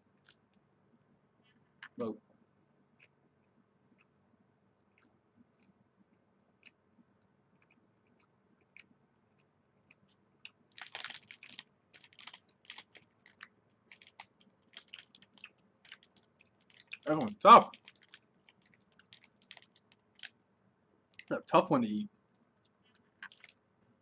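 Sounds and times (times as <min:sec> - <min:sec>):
crackling chewing: 0:02.9 - 0:20.4, 0:22.6 - 0:24.0.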